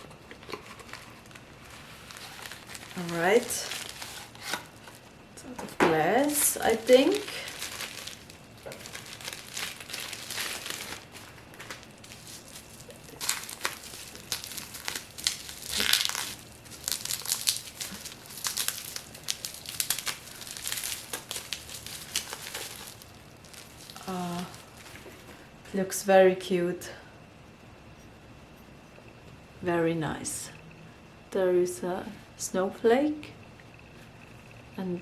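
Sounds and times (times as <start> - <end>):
packaging crinkling: 0.0 - 25.4.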